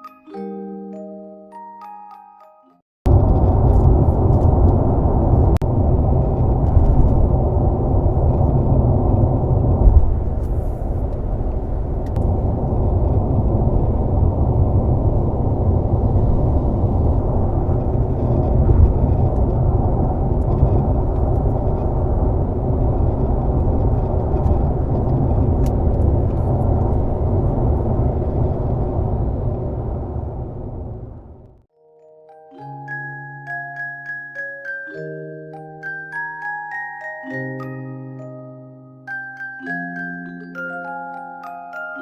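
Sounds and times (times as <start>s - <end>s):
car tyre road rumble: 3.1s - 31.6s.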